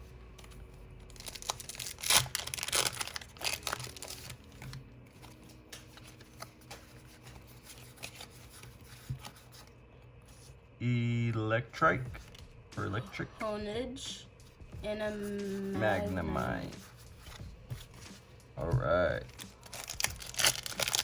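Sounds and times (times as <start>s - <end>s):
foil wrapper crinkling: 1.0s - 6.8s, 19.2s - 21.0s
cards clicking: 1.6s - 8.3s.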